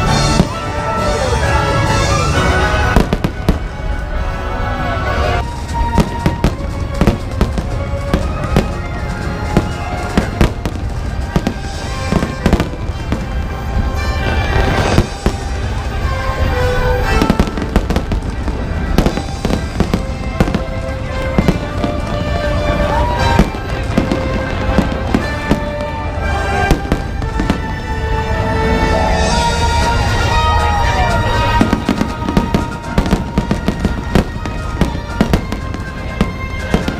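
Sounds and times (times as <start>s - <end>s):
fireworks bangs and crackles: 0.0s - 36.9s
music playing: 0.0s - 36.9s.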